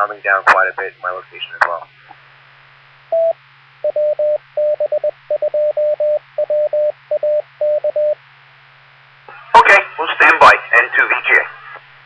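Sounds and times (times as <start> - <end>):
radio hiss: 0.0 - 2.6, 9.2 - 12.0
morse code beeps: 3.1 - 8.2.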